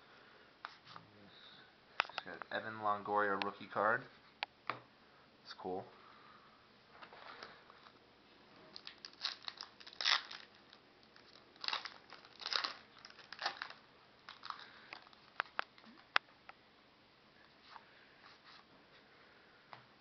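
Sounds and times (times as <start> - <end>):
wrapper crinkling and tearing: 8.7 - 16.0.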